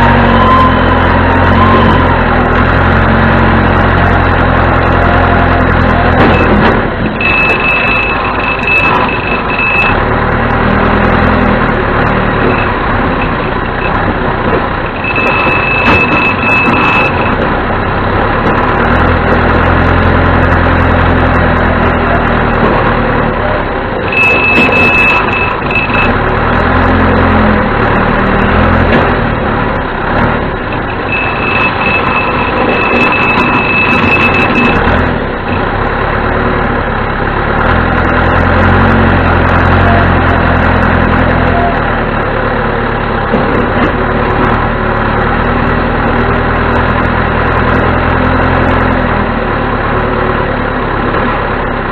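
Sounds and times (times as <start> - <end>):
diesel engine running: 0.0 - 51.9
backup alarm beeping: 4.8 - 10.1, 12.3 - 14.0, 14.9 - 17.4, 24.1 - 26.6, 30.7 - 35.6.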